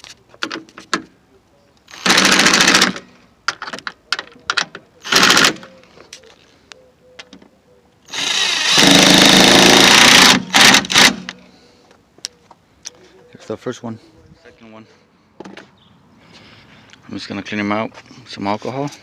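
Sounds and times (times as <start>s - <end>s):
parts clicking and knocking: 1.8s - 5.7s
handheld power tool running: 2.0s - 3.0s, 8.1s - 11.4s.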